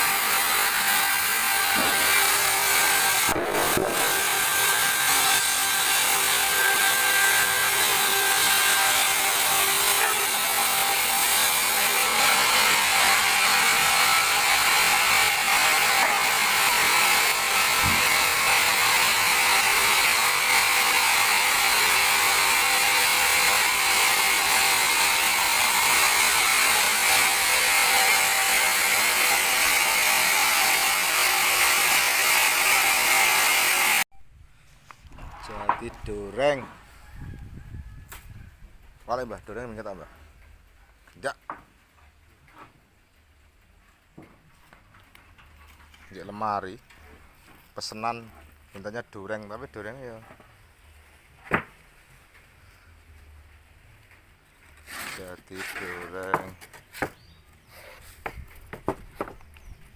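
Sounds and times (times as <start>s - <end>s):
band sawmill cutting log: 0.0s - 34.1s, 35.3s - 36.7s, 54.6s - 59.4s.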